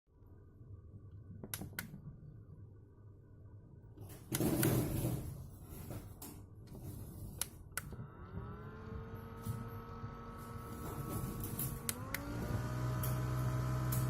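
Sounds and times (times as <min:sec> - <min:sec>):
small fan motor whining: 0:07.8 - 0:14.0.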